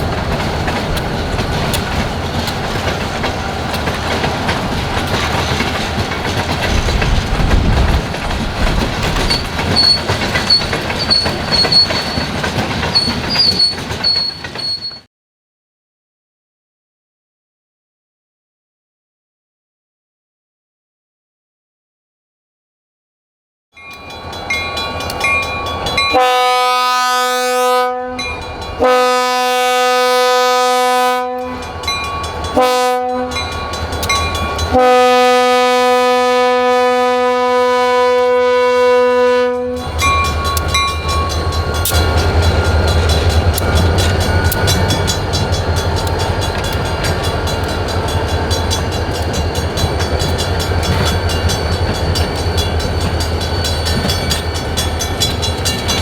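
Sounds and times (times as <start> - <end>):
train wheels clicking over rail joints: 0.0 - 15.1, 33.2 - 34.8, 39.8 - 56.0
locomotive air horn blasts: 26.1 - 31.7, 32.5 - 33.5, 34.7 - 40.1.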